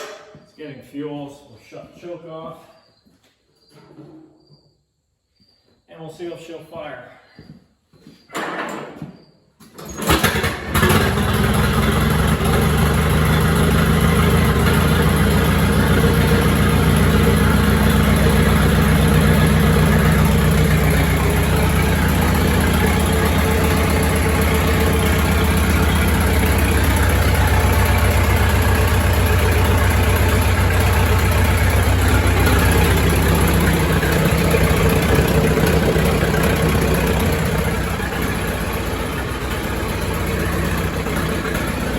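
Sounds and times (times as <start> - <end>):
tractor engine starting and running: 9.6 - 41.9.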